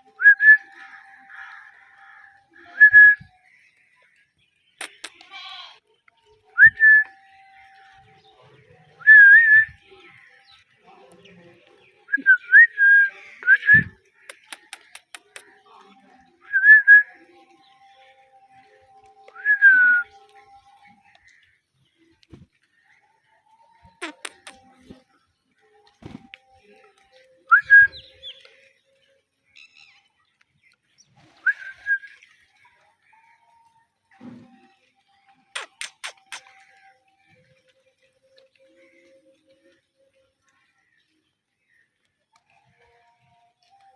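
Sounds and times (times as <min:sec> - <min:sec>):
sharp clicks: 0:04.8 - 0:05.3, 0:14.3 - 0:15.4, 0:24.0 - 0:24.7, 0:35.6 - 0:36.5.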